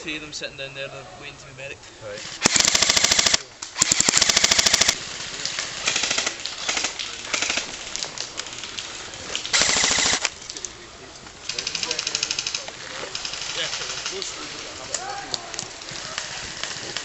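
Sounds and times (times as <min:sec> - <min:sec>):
airsoft guns firing bursts: 0:02.4 - 0:08.7, 0:09.4 - 0:10.4, 0:11.4 - 0:15.0, 0:15.8 - 0:17.0.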